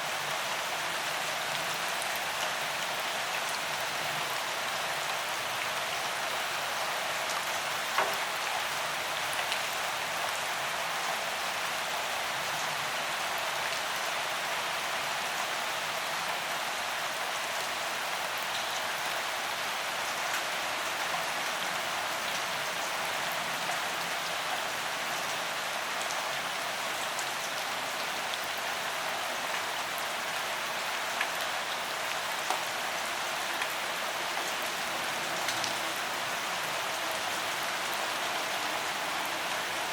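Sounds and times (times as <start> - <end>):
steady rain hiss: 0.0 - 39.9
sharp raindrops: 0.2 - 12.5, 17.3 - 39.9.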